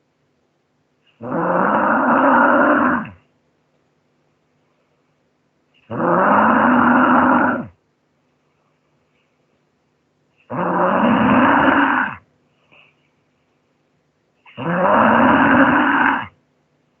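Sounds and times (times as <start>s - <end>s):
person snoring loudly: 1.2s - 3.2s, 5.9s - 7.7s, 10.5s - 12.2s, 14.5s - 16.4s.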